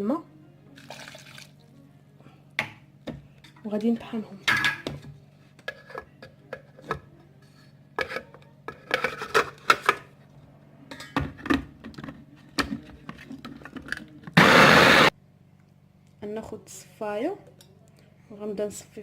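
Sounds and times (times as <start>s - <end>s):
electric blender grinding: 14.4s - 15.1s.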